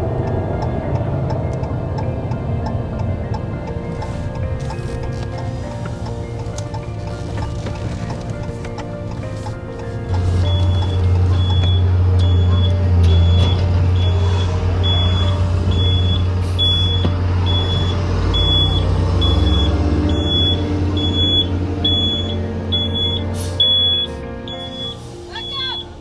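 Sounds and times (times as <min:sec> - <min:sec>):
heavy vehicle engine humming: 0:00.0 - 0:26.0
high-pitched warning beeper: 0:10.3 - 0:26.0.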